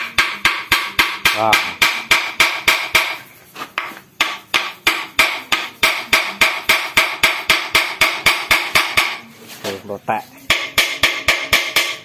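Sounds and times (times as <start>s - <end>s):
hammer striking ringing metal: 10.5s - 12.0s.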